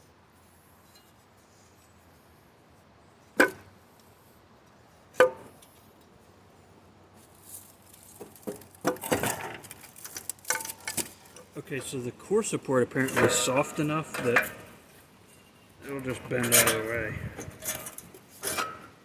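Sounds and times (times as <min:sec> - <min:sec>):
metal tools clinking: 0:12.9 - 0:19.0
sharp metal clanks: 0:13.0 - 0:15.5.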